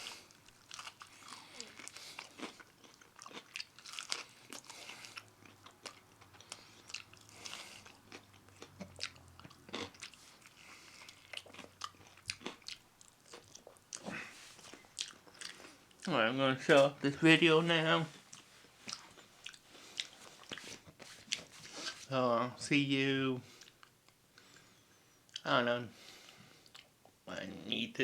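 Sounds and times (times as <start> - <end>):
person chewing crunchy food: 0.0 - 16.1, 18.2 - 22.0, 26.6 - 27.0.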